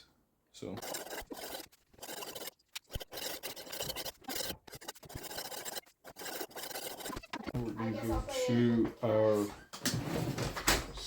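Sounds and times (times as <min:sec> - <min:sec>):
knife scraping sharpening stone: 0:00.8 - 0:07.2.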